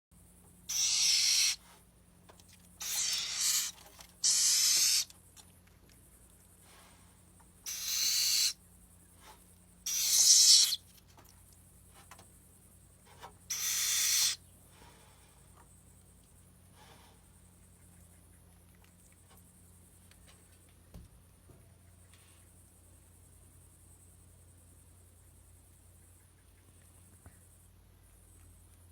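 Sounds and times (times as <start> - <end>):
owl hissing screech calls: 0.7 - 1.8, 2.8 - 5.1, 7.6 - 8.6, 9.8 - 10.8, 13.5 - 14.4.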